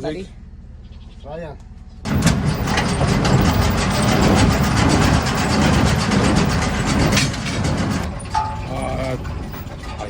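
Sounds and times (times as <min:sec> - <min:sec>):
tractor low rumble: 0:00.0 - 0:10.0
baler mechanism clattering: 0:02.1 - 0:10.0.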